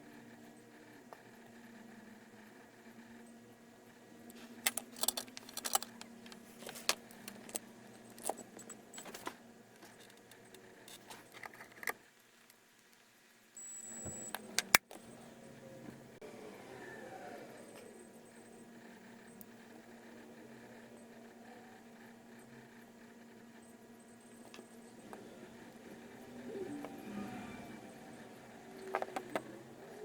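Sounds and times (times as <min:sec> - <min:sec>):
faint steady hum: 0:00.0 - 0:30.0
metallic clicks and clatter of tools: 0:04.6 - 0:09.2.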